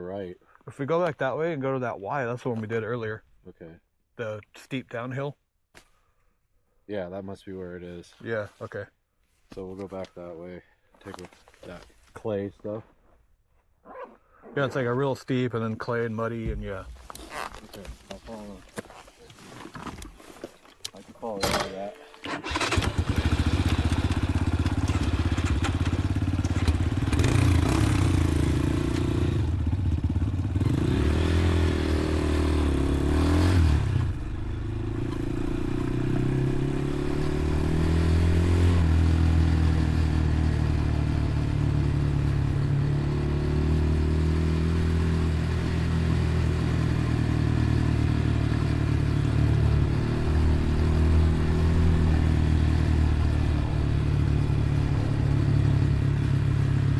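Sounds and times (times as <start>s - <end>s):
dirt bike engine revving: 22.3s - 56.9s.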